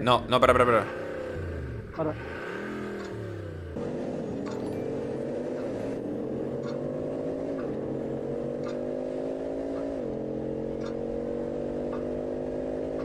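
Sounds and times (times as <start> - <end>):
car engine accelerating: 0.0 - 13.0.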